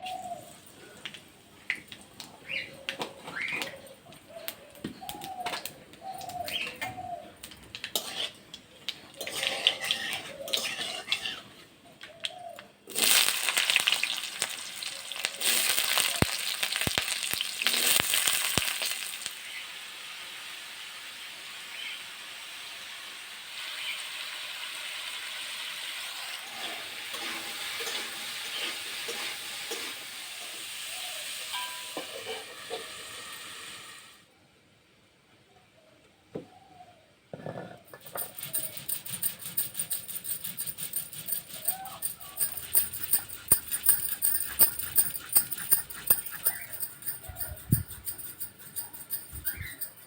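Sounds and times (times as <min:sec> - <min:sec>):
food sizzling in hot oil: 0:12.9 - 0:34.2.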